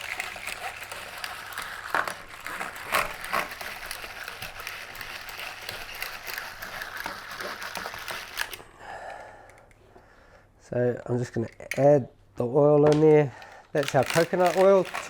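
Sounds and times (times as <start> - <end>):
whisk scraping a bowl: 0.0 - 8.6, 13.8 - 15.0.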